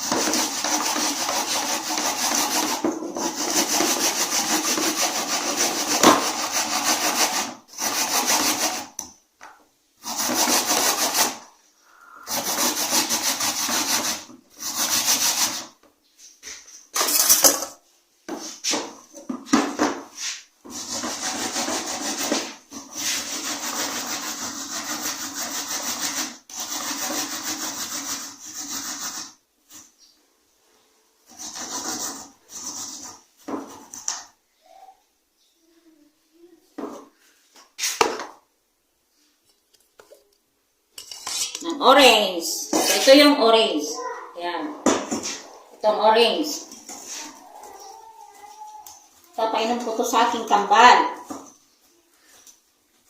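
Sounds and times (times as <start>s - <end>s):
grater rasping: 0.0s - 9.0s, 10.0s - 11.4s, 12.3s - 15.7s, 20.7s - 29.3s, 31.3s - 33.2s.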